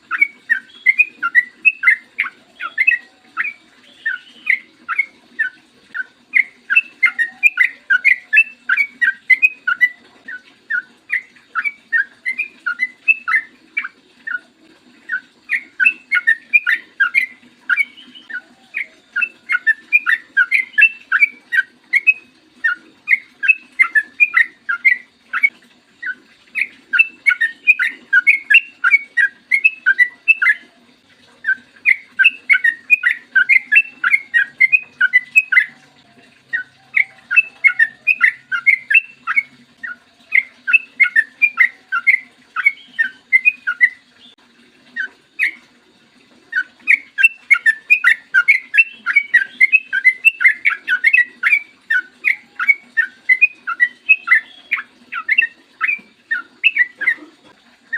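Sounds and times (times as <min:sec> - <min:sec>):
bird chattering song: 0:00.1 - 0:30.7, 0:31.4 - 0:44.4, 0:45.0 - 0:45.6, 0:46.5 - 0:57.3.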